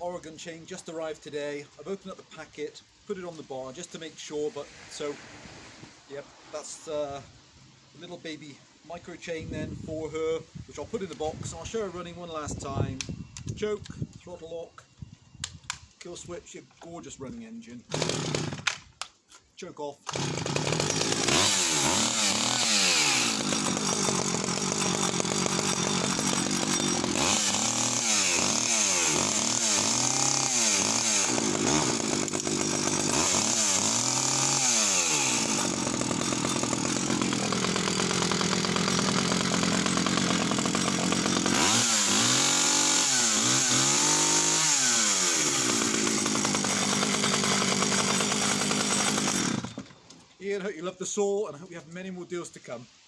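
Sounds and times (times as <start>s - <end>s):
chainsaw idling and revving: 17.9s - 18.8s, 20.0s - 50.0s.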